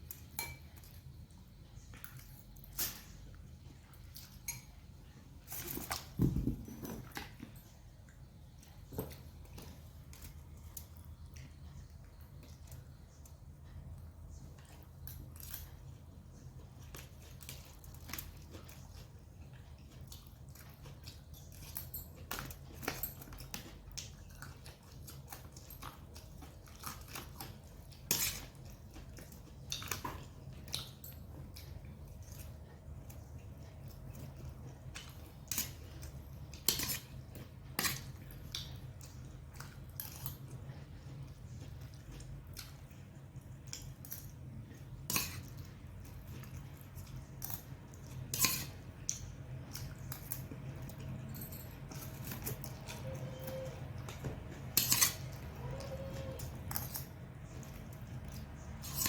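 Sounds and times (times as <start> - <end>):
chewing: 0.1 - 59.0
cutlery clicking against a dish: 54.1 - 55.4.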